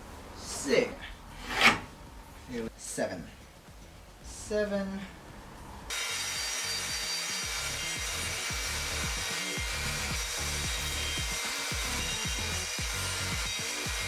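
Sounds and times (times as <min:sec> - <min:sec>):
table saw cutting wood: 0:01.4 - 0:01.9, 0:05.9 - 0:14.0.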